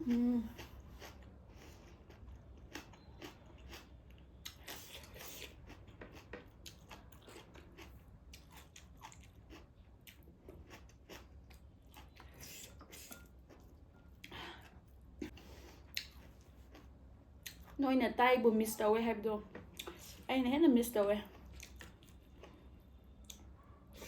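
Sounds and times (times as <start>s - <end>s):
person chewing with wet smacks: 0.0s - 17.8s, 19.5s - 20.3s, 21.3s - 24.0s.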